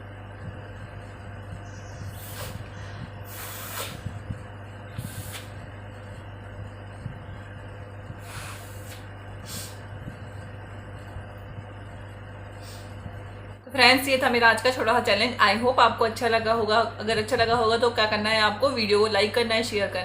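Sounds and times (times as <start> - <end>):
person blowing nose: 2.1 - 4.1, 4.9 - 5.6, 8.2 - 9.8.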